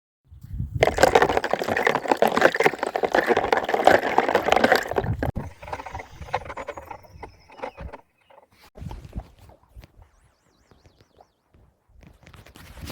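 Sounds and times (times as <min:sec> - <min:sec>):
water sloshing and bubbling: 0:00.8 - 0:09.8.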